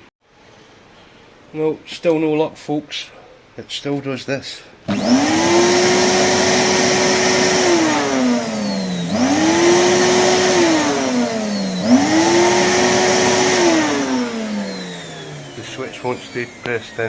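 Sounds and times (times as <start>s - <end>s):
vacuum cleaner motor whining: 4.9s - 17.0s.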